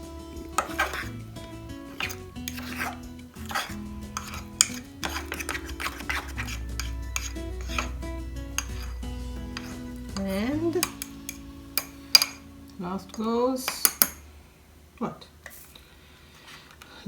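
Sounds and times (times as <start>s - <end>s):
background music: 0.0s - 14.2s
metal spoon scraping ceramic mug: 0.4s - 1.2s, 1.8s - 12.4s.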